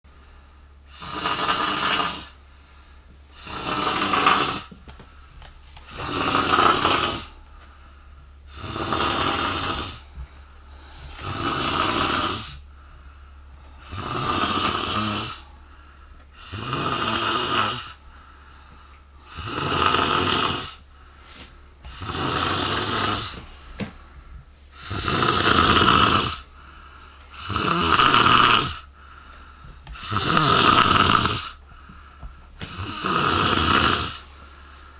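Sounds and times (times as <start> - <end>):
woman snoring loudly: 0.9 - 2.4, 3.3 - 4.8, 5.9 - 7.4, 8.5 - 10.1, 11.2 - 12.6, 13.8 - 15.5, 16.4 - 18.0, 19.2 - 20.8, 21.9 - 23.5, 24.8 - 26.5, 27.3 - 28.9, 30.0 - 31.6, 32.6 - 34.3.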